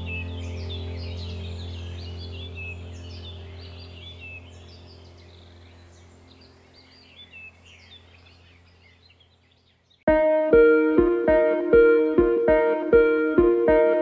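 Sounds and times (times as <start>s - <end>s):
steady low hum: 0.0s - 8.8s
small birds chirping: 0.0s - 10.1s.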